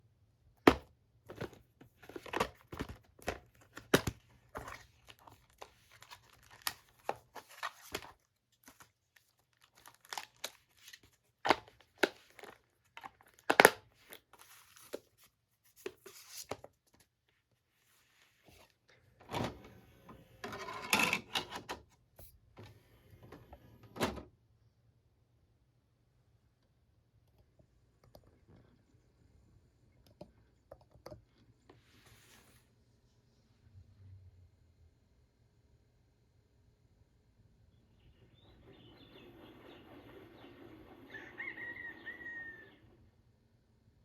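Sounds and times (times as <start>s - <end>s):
faint low hum: 21.9s - 44.0s.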